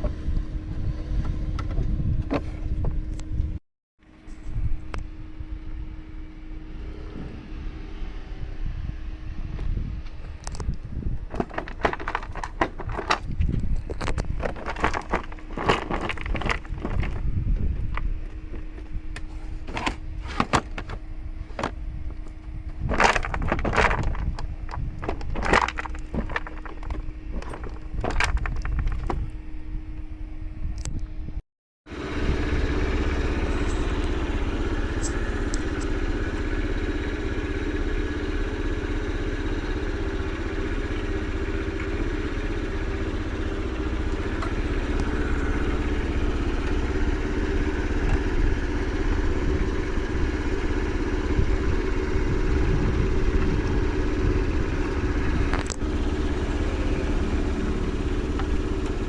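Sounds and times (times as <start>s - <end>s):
motorcycle engine running: 0.0s - 3.6s, 31.9s - 59.0s.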